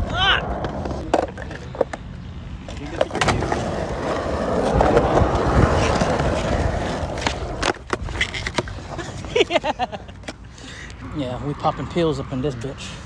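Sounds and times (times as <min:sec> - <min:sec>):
skateboard rolling: 0:00.0 - 0:10.4.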